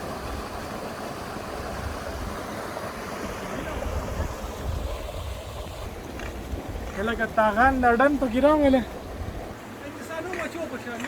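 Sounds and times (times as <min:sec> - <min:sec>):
rushing water: 0:00.0 - 0:11.0
wind buffeting the microphone: 0:03.3 - 0:09.6.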